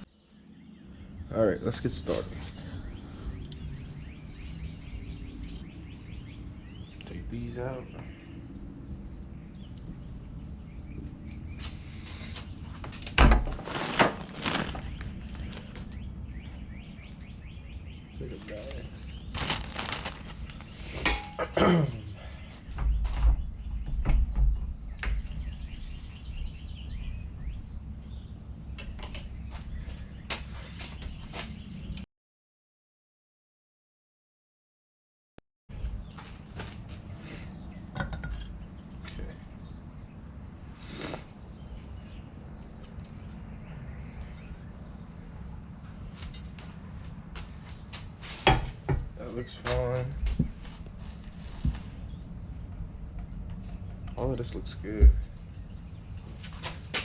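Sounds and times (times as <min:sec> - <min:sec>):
birds chirping: 0:00.0 - 0:13.2, 0:13.8 - 0:32.1, 0:35.7 - 0:57.0
tools and metal parts clicking: 0:04.6 - 0:05.8, 0:28.8 - 0:29.3.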